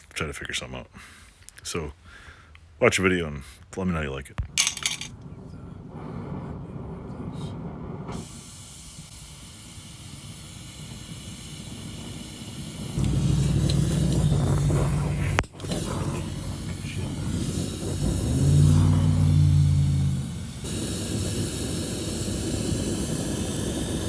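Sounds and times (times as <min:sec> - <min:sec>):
gas torch hissing: 0:05.2 - 0:24.0
low steady drone: 0:12.6 - 0:24.0.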